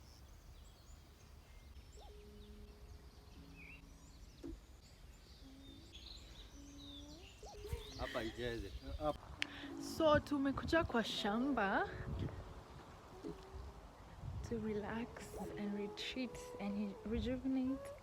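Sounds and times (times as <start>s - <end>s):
distant bird chirps: 0.0s - 10.1s.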